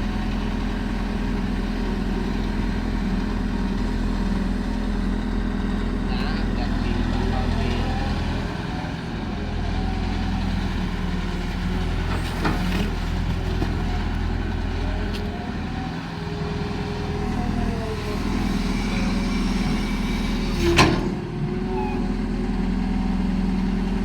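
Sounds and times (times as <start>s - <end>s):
excavator diesel engine running: 0.0s - 24.0s
hydraulic whine: 15.0s - 22.4s.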